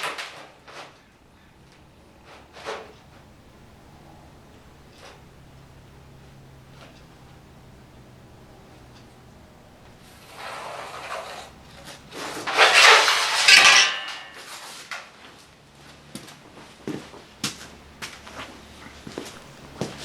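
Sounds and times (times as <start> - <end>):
rattling metal scrape: 0.0 - 1.1, 2.2 - 3.2, 9.8 - 15.2.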